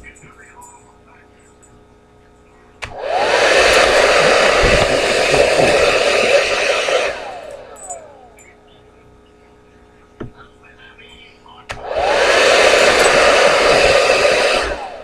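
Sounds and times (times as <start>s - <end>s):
hair dryer blowing: 2.8s - 8.4s, 11.7s - 15.0s.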